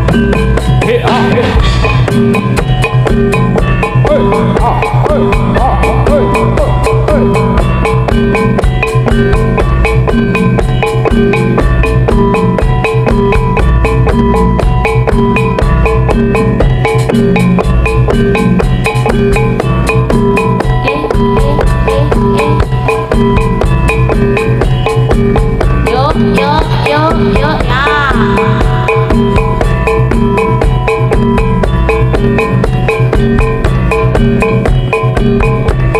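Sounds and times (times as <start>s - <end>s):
hand drums beating: 0.0s - 35.9s
metallophones and gongs ringing: 0.0s - 35.9s.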